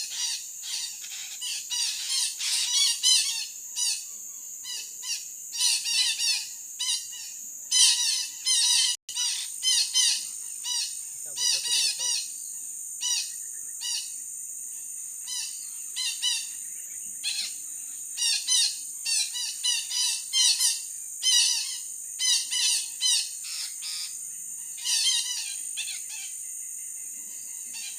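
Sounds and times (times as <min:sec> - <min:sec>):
parakeets giving harsh calls: 0:00.0 - 0:04.0, 0:05.0 - 0:12.3, 0:18.2 - 0:24.2, 0:24.8 - 0:26.3
high-pitched insect drone: 0:00.0 - 0:27.9.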